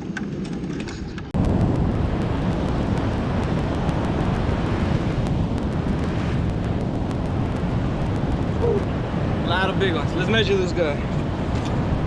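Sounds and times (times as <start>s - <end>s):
wind rumbling on microphone: 1.4s - 10.1s.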